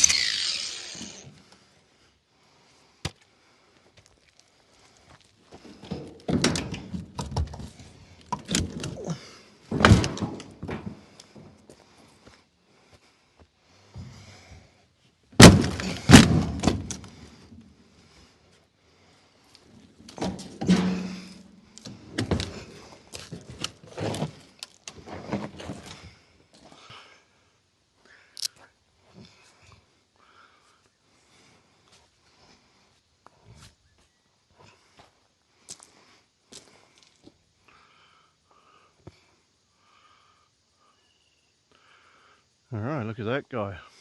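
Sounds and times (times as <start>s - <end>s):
board creaking off nails: 0.0s - 1.5s, 6.2s - 9.1s, 9.7s - 11.1s, 15.4s - 17.3s
wood knocks and thuds: 5.9s - 9.0s, 9.7s - 11.6s, 15.4s - 17.2s, 20.1s - 24.4s
wooden knocks and clatters: 5.9s - 9.0s, 9.7s - 11.6s.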